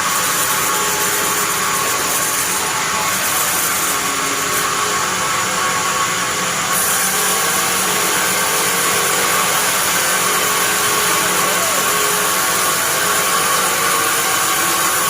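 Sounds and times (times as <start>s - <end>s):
bandsaw cutting log: 0.0s - 15.0s.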